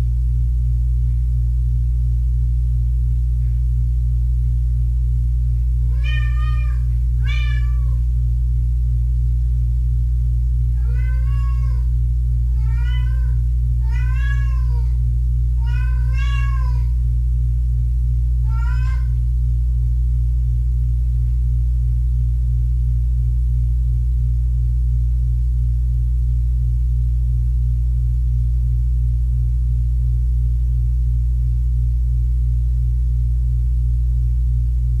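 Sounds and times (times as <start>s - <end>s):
loud low hum: 0.0s - 35.0s
kittens meowing: 5.9s - 8.0s, 10.8s - 11.9s, 12.6s - 15.0s, 15.6s - 16.9s, 18.5s - 19.2s.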